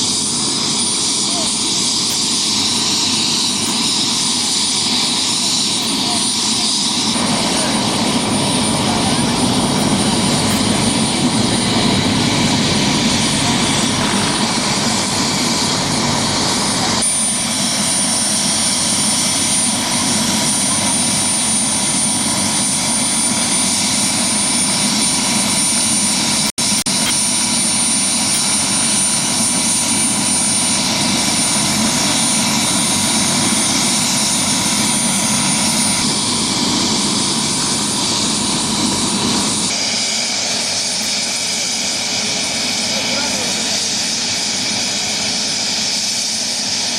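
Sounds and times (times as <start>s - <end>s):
thin high whine: 0.0s - 22.7s
helicopter engine and rotor: 0.0s - 46.9s.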